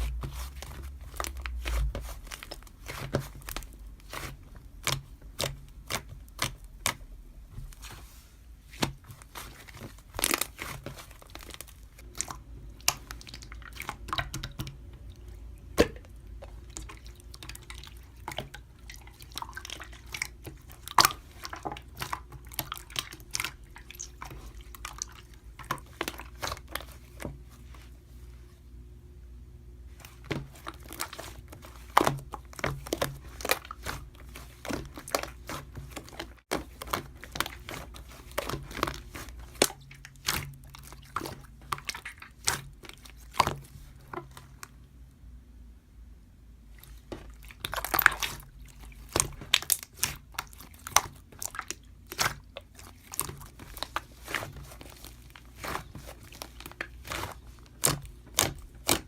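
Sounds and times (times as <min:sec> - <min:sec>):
slime squishing: 0:00.0 - 0:28.7, 0:29.8 - 0:45.2, 0:46.6 - 0:59.0
slime clicking and popping: 0:55.6 - 0:59.0.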